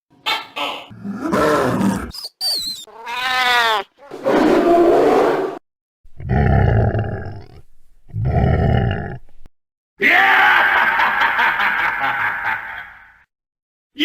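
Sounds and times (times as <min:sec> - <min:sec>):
deep animal-like roars: 0:04.3 - 0:09.4.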